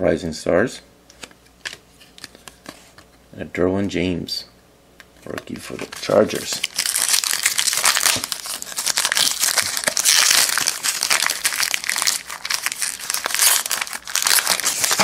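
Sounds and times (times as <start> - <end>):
plastic wrapper crinkling: 5.2 - 15.0.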